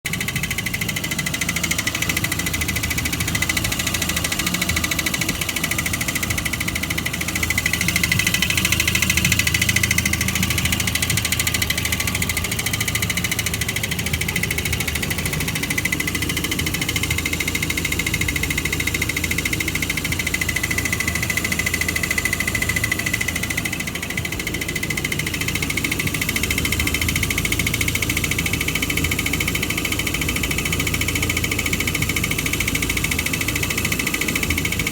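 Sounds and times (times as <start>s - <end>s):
car engine running: 0.0s - 34.9s
rapid engine knock: 0.0s - 34.9s.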